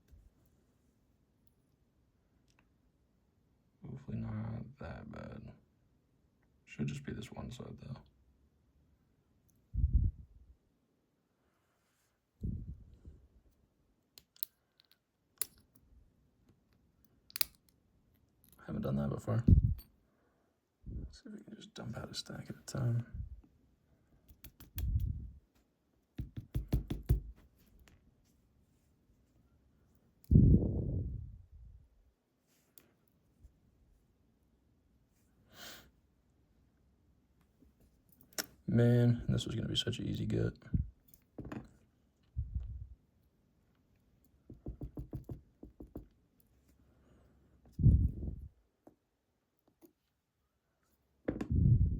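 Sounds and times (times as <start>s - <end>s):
lock pins clicking: 14.2s - 15.8s, 17.3s - 17.8s, 24.3s - 25.0s
light knocks of lock pins: 16.5s - 17.8s, 24.2s - 25.1s.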